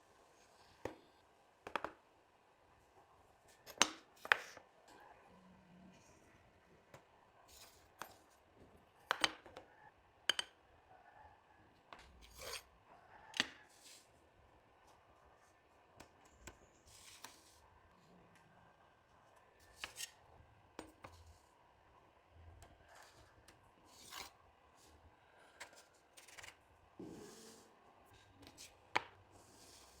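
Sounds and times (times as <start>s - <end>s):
wood and tools tapping: 9.1s - 9.7s, 10.3s - 10.6s
wood and tools rubbing and scraping: 25.7s - 30.0s.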